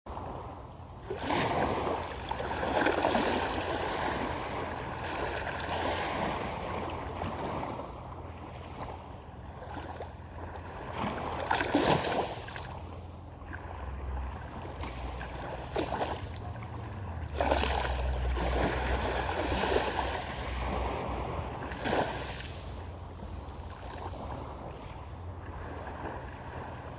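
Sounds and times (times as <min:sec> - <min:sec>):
sea waves washing in: 0:00.1 - 0:26.9
low rumble: 0:12.8 - 0:25.9.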